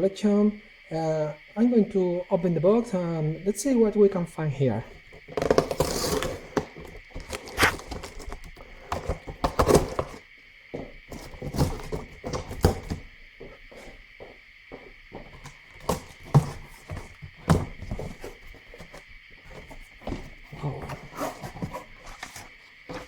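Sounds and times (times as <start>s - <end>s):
cardboard scraping rustles: 5.2s - 10.2s, 11.1s - 13.0s, 15.3s - 23.0s
knocks and thunks on cardboard box: 5.3s - 10.2s, 10.8s - 13.1s, 15.2s - 23.0s.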